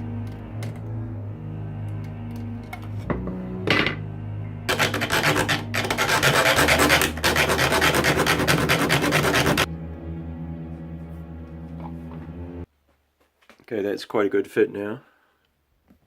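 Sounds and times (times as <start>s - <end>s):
rasp filing wood: 4.7s - 9.7s.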